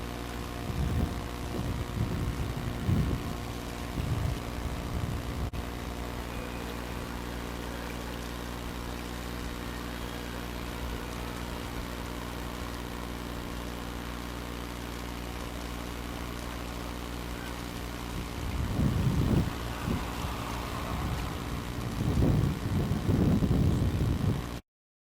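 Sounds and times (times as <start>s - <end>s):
electric train equipment humming: 0.0s - 24.6s
wind gust on microphone: 0.6s - 13.6s, 17.8s - 24.6s.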